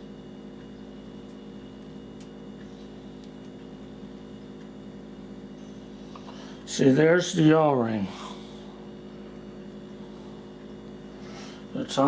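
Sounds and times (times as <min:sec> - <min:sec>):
low room tone hum: 0:00.0 - 0:12.0.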